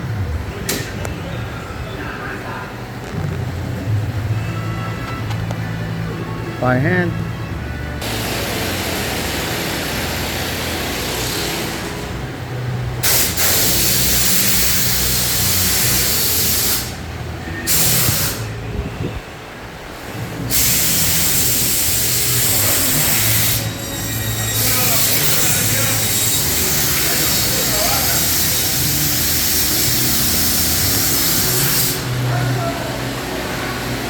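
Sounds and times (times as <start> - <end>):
machine hissing: 8.0 - 12.2, 13.0 - 17.0, 17.6 - 18.5, 20.5 - 32.2.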